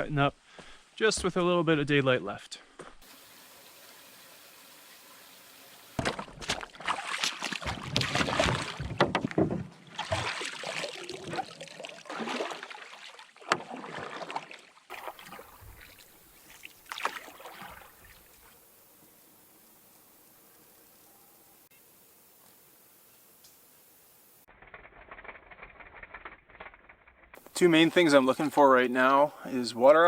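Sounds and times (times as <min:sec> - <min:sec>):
paddle strokes splashing water: 0:03.1 - 0:18.6.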